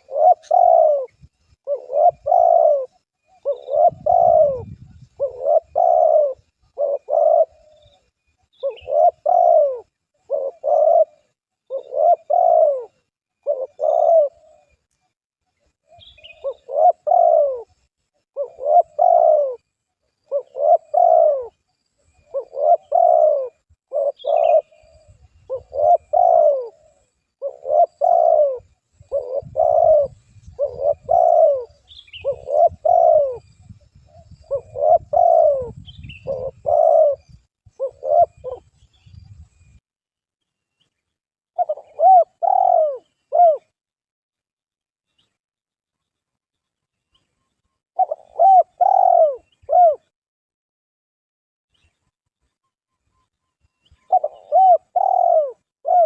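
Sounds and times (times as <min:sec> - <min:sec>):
dove cooing: 0:00.0 - 0:14.8, 0:15.6 - 0:39.4, 0:41.6 - 0:43.8, 0:48.0 - 0:50.1, 0:54.0 - 0:56.0.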